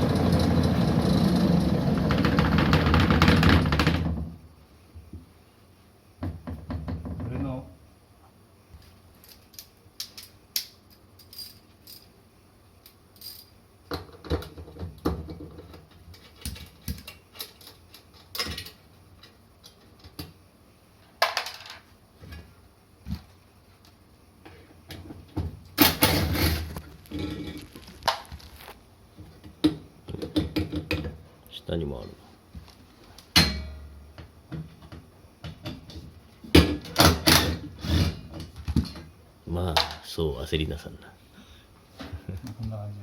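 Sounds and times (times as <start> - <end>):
metallic clicks and clinks: 13.2 - 13.5.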